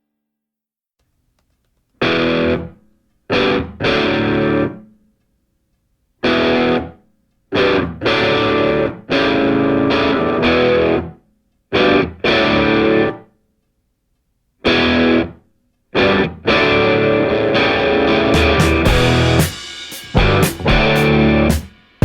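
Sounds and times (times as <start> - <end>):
distorted electric guitar chords: 2.0 - 2.7, 3.3 - 4.8, 6.2 - 6.9, 7.5 - 11.2, 11.8 - 13.2, 14.7 - 15.4, 16.0 - 21.7.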